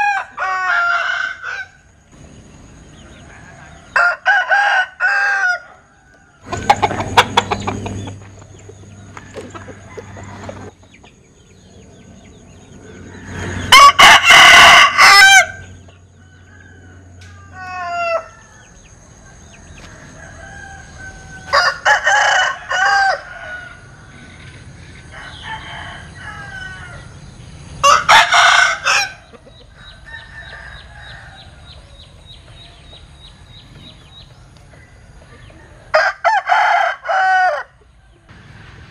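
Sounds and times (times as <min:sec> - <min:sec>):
rooster crowing: 0:00.0 - 0:02.0, 0:02.9 - 0:06.8, 0:09.0 - 0:10.8, 0:12.8 - 0:24.4, 0:25.0 - 0:27.2, 0:27.8 - 0:32.1, 0:35.4 - 0:37.8
chicken clucking: 0:06.4 - 0:12.4, 0:29.0 - 0:30.7.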